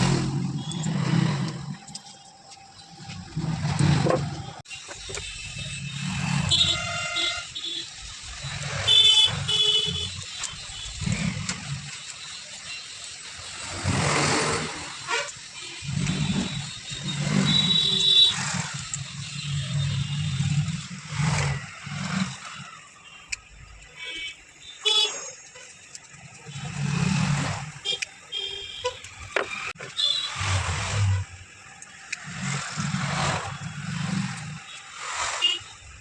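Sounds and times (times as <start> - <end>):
passing road traffic: 0.0 - 36.0
vehicle horns honking: 4.6 - 8.0, 8.8 - 11.0, 15.1 - 18.4, 24.0 - 25.4, 27.8 - 29.1, 29.8 - 30.5, 35.4 - 35.8.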